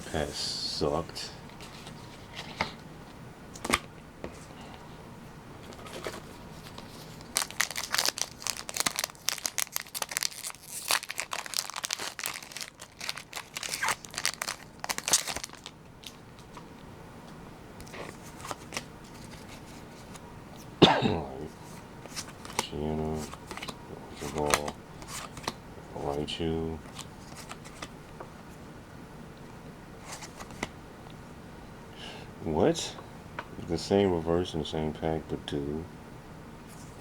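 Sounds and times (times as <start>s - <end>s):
foil wrapper tearing and crinkling: 6.6s - 16.2s.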